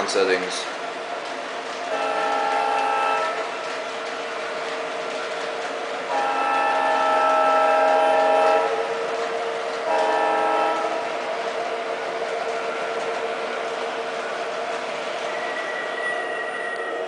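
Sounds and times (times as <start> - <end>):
model locomotive air horn: 1.9 - 3.5, 6.1 - 8.9, 9.8 - 11.0.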